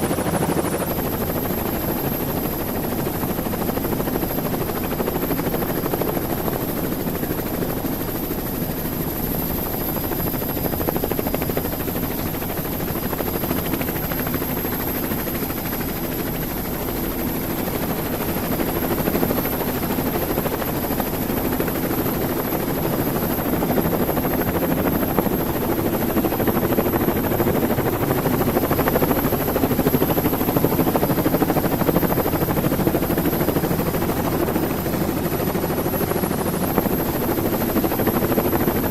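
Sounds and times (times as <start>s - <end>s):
helicopter rotor and engine drone: 0.0s - 38.9s.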